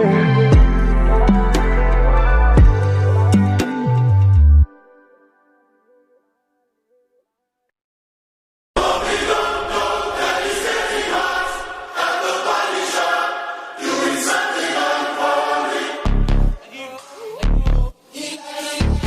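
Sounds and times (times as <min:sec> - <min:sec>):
music with singing voices: 0:00.0 - 0:04.9, 0:08.8 - 0:19.0.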